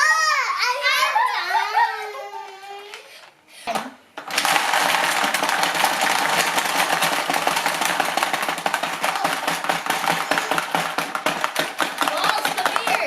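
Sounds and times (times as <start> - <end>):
marbles rattling on plastic: 4.2 - 13.0.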